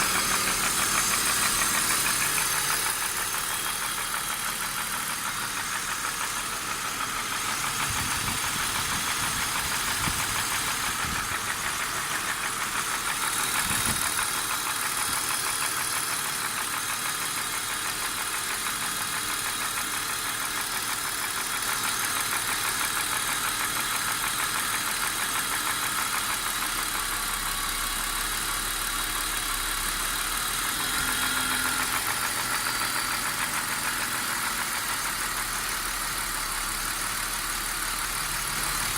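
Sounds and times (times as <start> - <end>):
car engine idling: 0.0 - 38.9
rapid engine knocking: 0.0 - 38.9.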